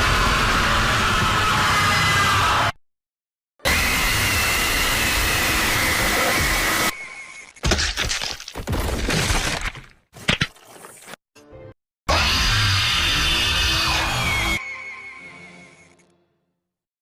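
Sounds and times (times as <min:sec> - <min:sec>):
crashing and breaking sounds: 0:07.5 - 0:11.2.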